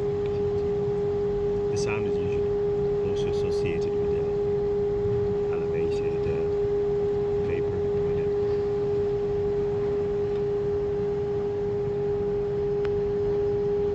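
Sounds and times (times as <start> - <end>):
building machinery hum: 0.0 - 13.9.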